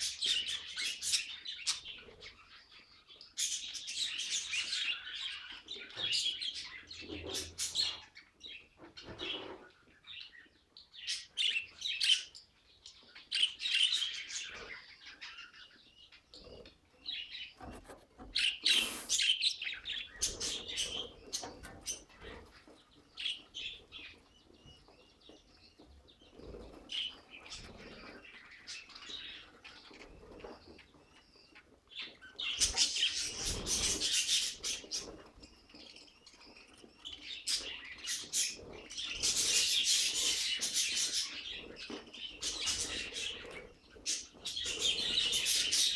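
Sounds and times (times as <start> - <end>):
budgerigars chirping and chattering: 0.0 - 45.9.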